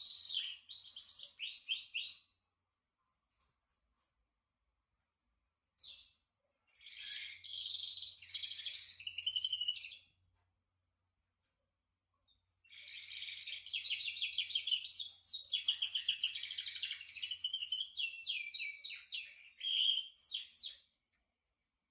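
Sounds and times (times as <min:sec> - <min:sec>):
canary singing trills: 0:00.0 - 0:02.4, 0:05.8 - 0:10.1, 0:12.5 - 0:20.9.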